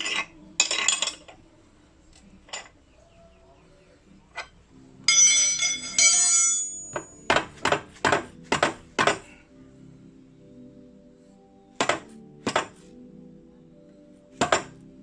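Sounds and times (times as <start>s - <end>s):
metal tools clattering: 0.0s - 1.4s, 2.4s - 2.8s, 4.3s - 7.5s.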